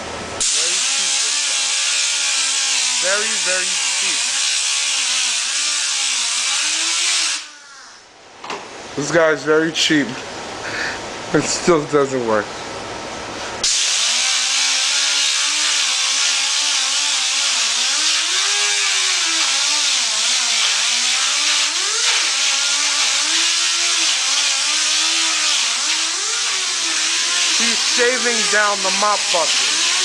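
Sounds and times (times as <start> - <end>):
power sander grinding plastic: 0.5 - 7.6, 13.9 - 30.0.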